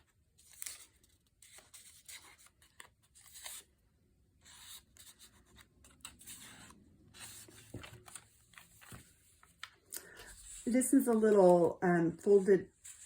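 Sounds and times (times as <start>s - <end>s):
paper rustling and sliding: 4.4s - 11.7s, 12.3s - 13.0s.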